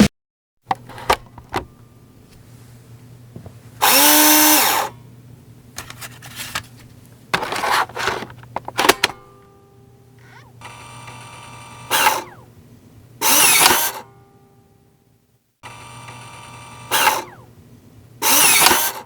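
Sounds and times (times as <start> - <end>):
steady low hum: 0.7 - 10.7, 12.3 - 13.2
short grinding bursts: 3.8 - 4.9, 13.2 - 14.0, 18.2 - 19.0
disk drive whirring buzz: 3.8 - 5.2, 5.8 - 14.2, 15.6 - 19.0.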